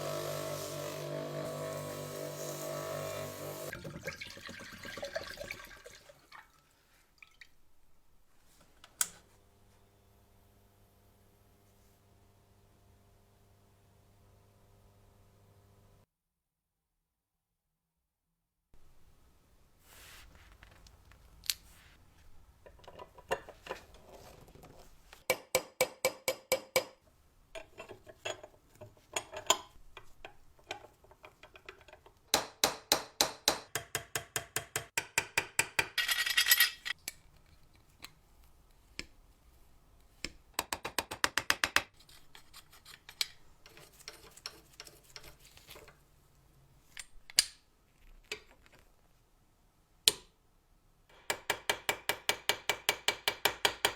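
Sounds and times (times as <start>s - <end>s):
metal clinks: 36.0s - 37.0s.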